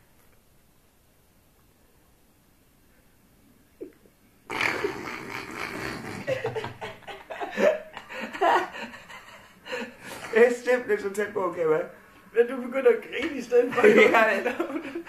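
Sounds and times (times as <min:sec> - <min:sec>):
person laughing: 0:03.8 - 0:10.2.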